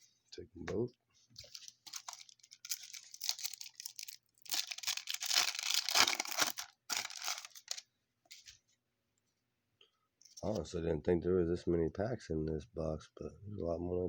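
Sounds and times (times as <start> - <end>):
card pack wrapper crinkling: 1.4 - 8.5.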